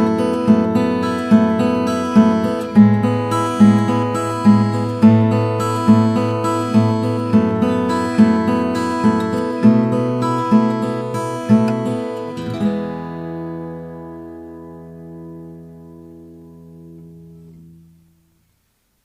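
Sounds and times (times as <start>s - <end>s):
acoustic guitar strumming chords: 0.0s - 18.4s.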